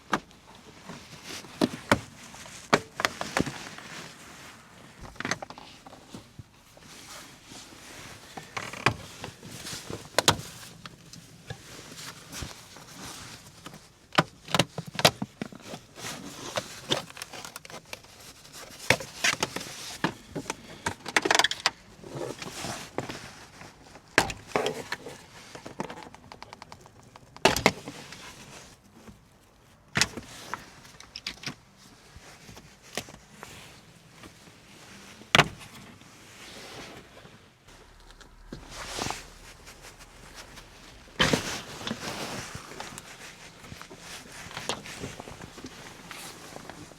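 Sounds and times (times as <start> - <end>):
rustling: 28.0 - 46.9.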